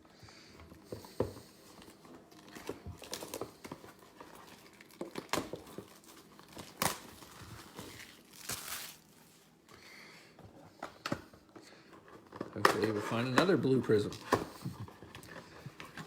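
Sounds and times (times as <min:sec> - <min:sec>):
plastic wrap and cardboard tearing: 0:02.4 - 0:09.6.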